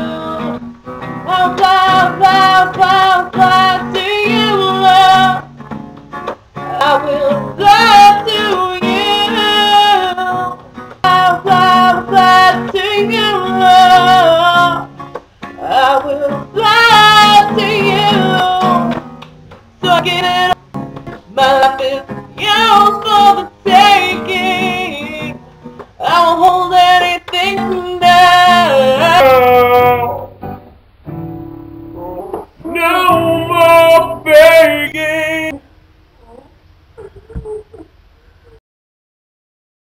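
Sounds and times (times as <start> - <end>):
woman singing: 0.0 - 5.5, 6.6 - 19.0, 19.8 - 20.6, 21.2 - 25.4, 26.0 - 30.4, 32.0 - 35.6
acoustic guitar: 0.0 - 38.6.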